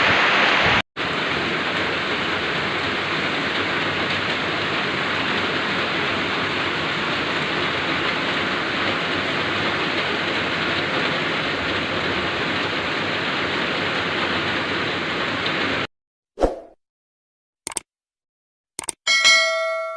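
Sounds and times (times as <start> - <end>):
heavy rain pouring: 0.0 - 15.9
short chime: 19.1 - 19.9.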